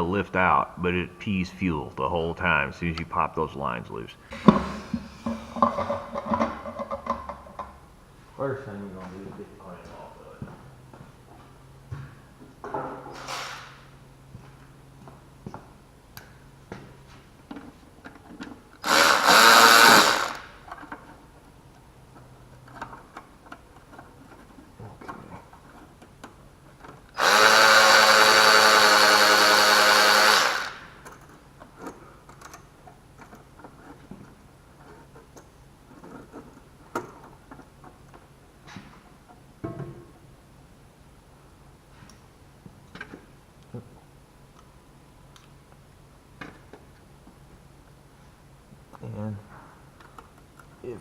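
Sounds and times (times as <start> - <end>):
power drill spinning: 18.8 - 20.7, 27.1 - 31.0.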